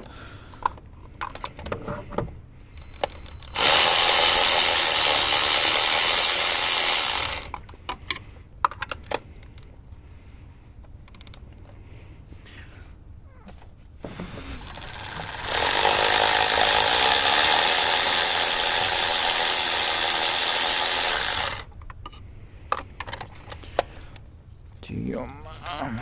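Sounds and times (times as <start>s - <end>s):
power tool rushing: 3.0s - 7.5s, 14.2s - 21.7s
tools clicking and clinking: 14.6s - 24.2s.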